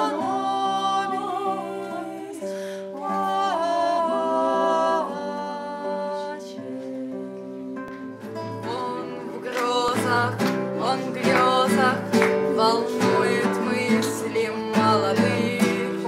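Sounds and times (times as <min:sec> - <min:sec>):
person singing slow song: 0:00.0 - 0:16.0.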